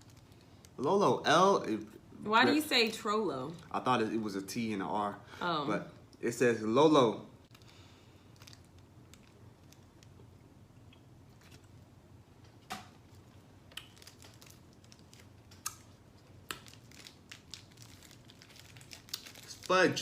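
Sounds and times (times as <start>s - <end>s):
chewing candy: 13.7s - 19.7s.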